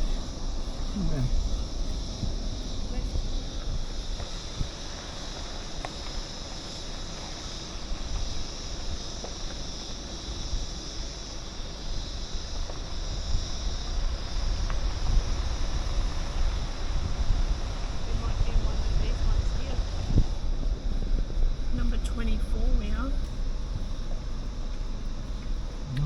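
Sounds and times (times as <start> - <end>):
low rumble: 0.0 - 6.5, 13.2 - 26.0
high insect chorus: 0.0 - 26.0.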